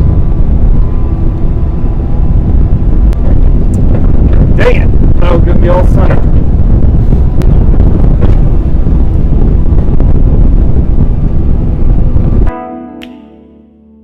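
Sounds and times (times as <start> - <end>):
wind buffeting microphone: 0.0 - 12.5
music: 12.5 - 14.0.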